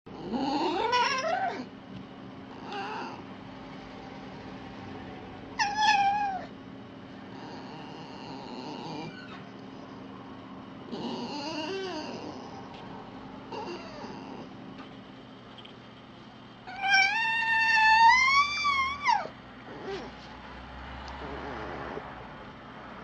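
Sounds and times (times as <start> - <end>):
fox calling: 16.7 - 19.3.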